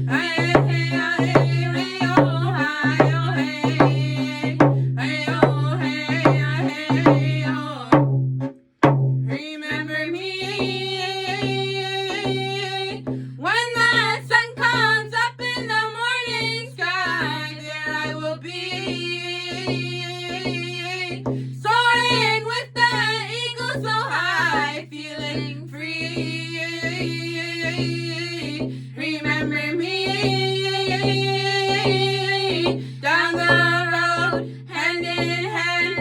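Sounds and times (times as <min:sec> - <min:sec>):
young voices singing in unison: 0:00.0 - 0:08.0, 0:09.3 - 0:15.6, 0:16.2 - 0:36.0
drum beaten in steady pulse: 0:00.0 - 0:36.0.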